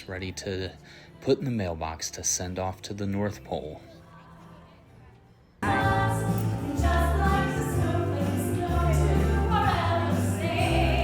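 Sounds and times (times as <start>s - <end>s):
people singing: 5.6s - 11.0s
recorded backing music: 5.6s - 11.0s.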